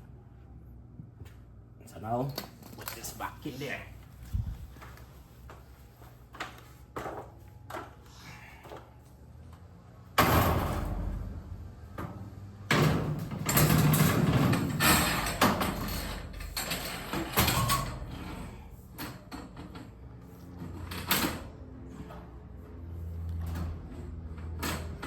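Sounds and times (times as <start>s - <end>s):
metal clanks and scrapes: 12.8s - 20.0s.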